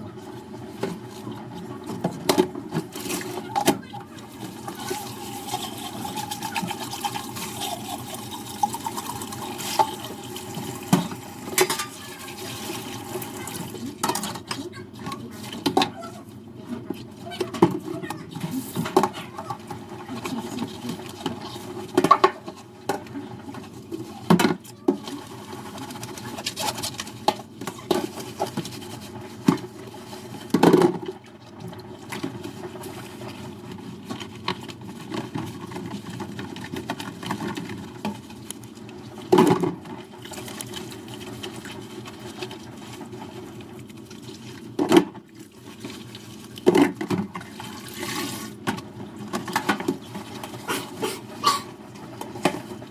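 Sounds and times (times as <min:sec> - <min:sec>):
dishes being scrubbed: 0:00.2 - 0:30.9, 0:49.4 - 0:52.7
dishes clinking against sink: 0:10.8 - 0:12.4, 0:50.7 - 0:51.8.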